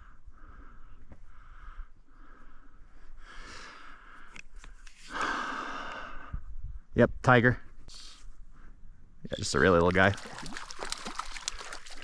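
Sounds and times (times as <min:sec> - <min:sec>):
person breathing close: 0:05.0 - 0:06.4.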